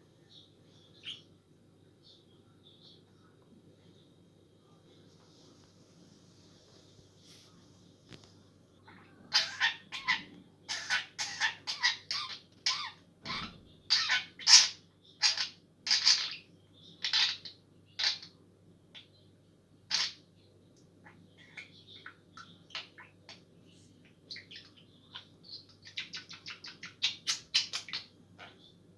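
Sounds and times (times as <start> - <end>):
faint bird chirps: 0.0 - 5.0, 8.8 - 28.9
budgerigar sharp calls: 9.3 - 16.4, 17.0 - 18.3.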